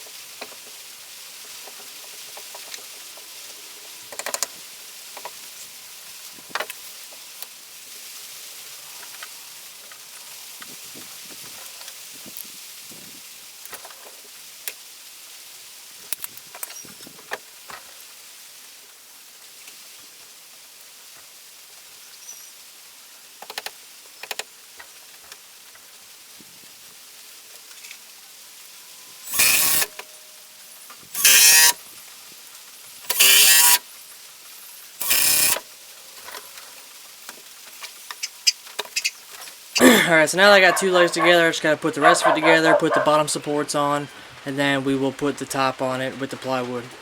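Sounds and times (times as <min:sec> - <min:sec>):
power driver driving screws: 0:29.3 - 0:30.1, 0:31.2 - 0:31.8, 0:33.1 - 0:33.8, 0:35.0 - 0:35.6.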